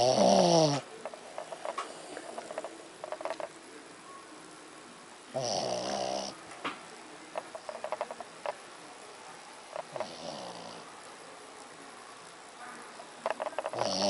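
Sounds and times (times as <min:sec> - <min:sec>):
dog snoring: 0:00.0 - 0:00.8, 0:05.3 - 0:06.4, 0:09.9 - 0:10.9, 0:13.6 - 0:14.0.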